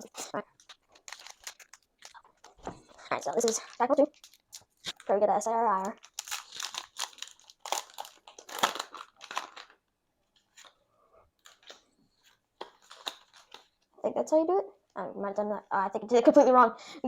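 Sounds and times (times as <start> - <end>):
foil wrapper tearing and crinkling: 0.2 - 9.8, 12.6 - 13.8.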